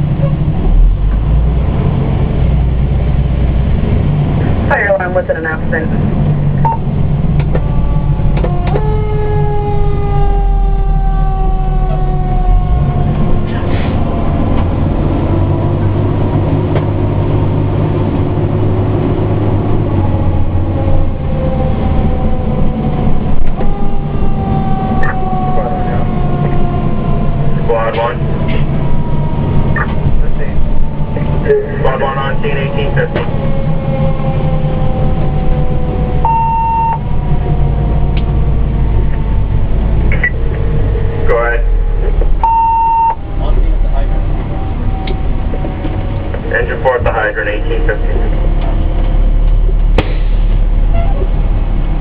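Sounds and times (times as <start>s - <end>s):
fire engine drone: 0.0s - 52.0s
falling drawn-out tone: 7.6s - 13.5s, 33.8s - 39.4s, 40.1s - 46.3s, 48.4s - 51.8s
short steady beep: 36.3s - 37.0s, 42.4s - 43.2s.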